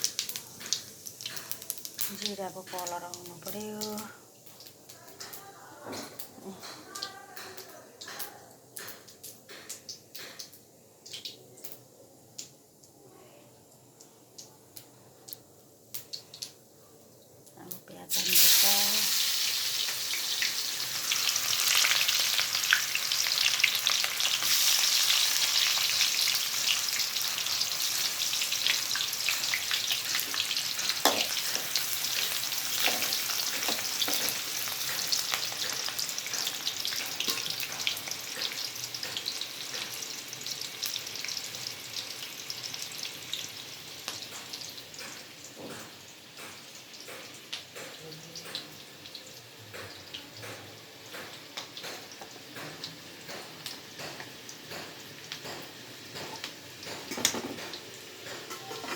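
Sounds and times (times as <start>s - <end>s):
onion sizzling in hot oil: 0.0s - 12.8s, 17.6s - 58.9s
spoon stirring and tapping pan: 28.7s - 40.2s, 44.1s - 48.9s, 49.7s - 58.9s.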